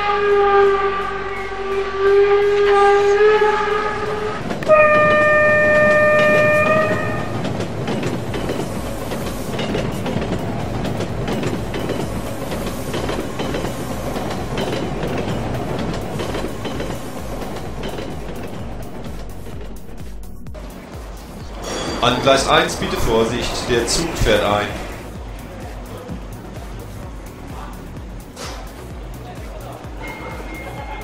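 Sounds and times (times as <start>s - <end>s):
train horn blast: 0.0s - 7.6s, 29.8s - 31.0s
train rumbling over rails: 0.0s - 31.0s.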